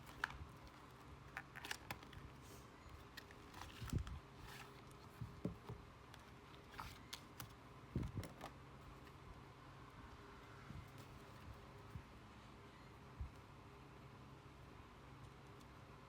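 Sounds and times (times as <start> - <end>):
packaging clicks and rustles: 0.0 - 9.2.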